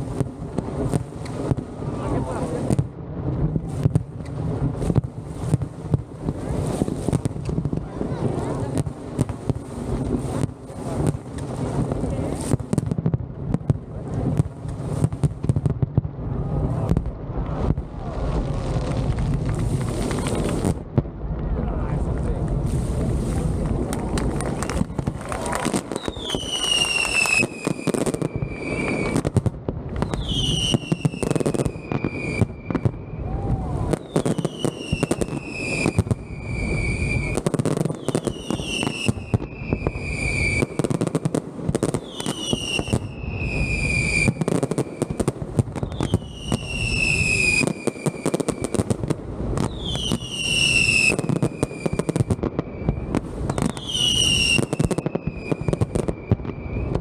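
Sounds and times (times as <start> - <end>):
fireworks crackling and banging: 0.0 - 57.0.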